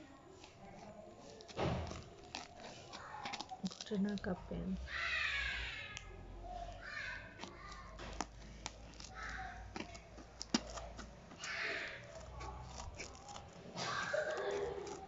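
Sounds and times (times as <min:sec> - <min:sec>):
scissors snipping: 0:00.4 - 0:04.3, 0:07.4 - 0:15.0
packaging rustling: 0:00.4 - 0:04.5, 0:07.4 - 0:15.0
wrapping being cut and torn: 0:00.4 - 0:04.5, 0:06.7 - 0:15.0.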